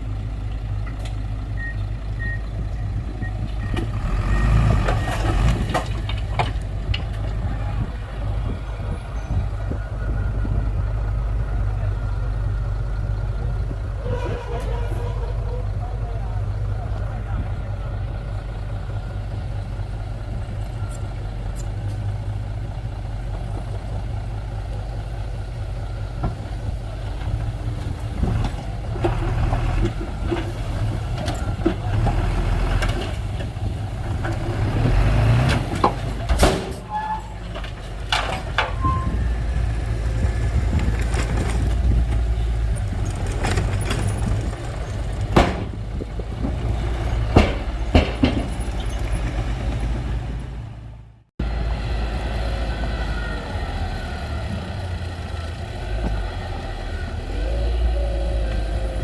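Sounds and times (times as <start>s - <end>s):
heavy diesel engine running: 0.0s - 59.0s
metallic clanks and knocks: 35.5s - 39.2s, 47.2s - 49.1s.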